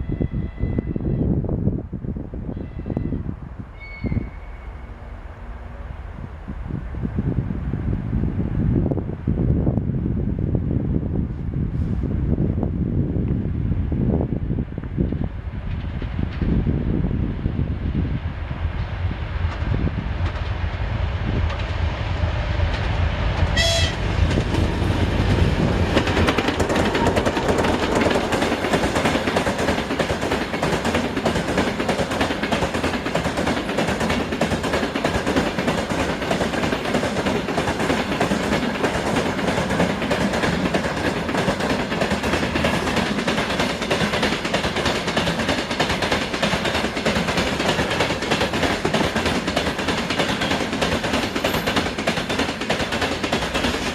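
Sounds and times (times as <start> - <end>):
diesel locomotive rumbling: 1.3 - 53.9
wagon wheels clickety-clack: 25.9 - 53.9.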